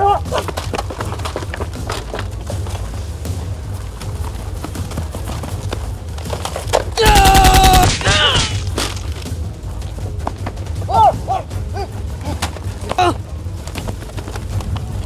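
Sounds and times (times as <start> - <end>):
rapid automatic gunfire: 7.0 - 8.0.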